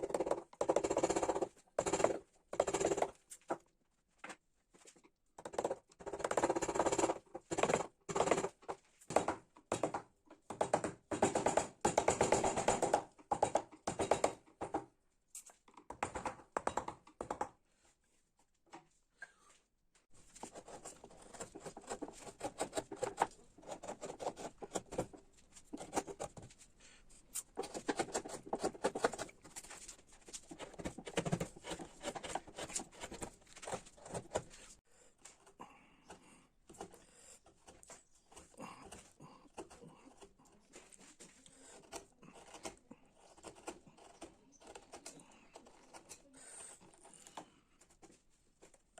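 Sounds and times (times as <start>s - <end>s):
chisels cutting into wood: 0.0s - 3.2s, 5.4s - 14.8s, 20.4s - 26.5s, 27.4s - 34.7s, 36.7s - 48.1s.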